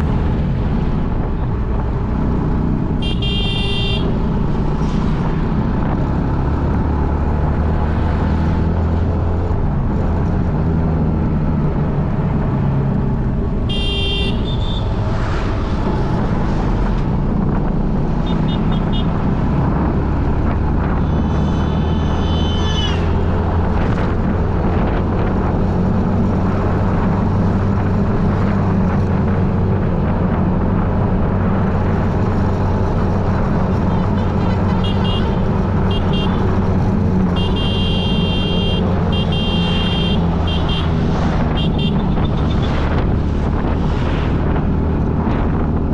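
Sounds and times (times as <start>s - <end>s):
road traffic and engine noise: 0.0s - 45.9s
vehicle horn honk: 3.0s - 4.1s, 13.7s - 14.8s, 34.8s - 36.4s, 37.4s - 40.9s, 41.6s - 42.5s.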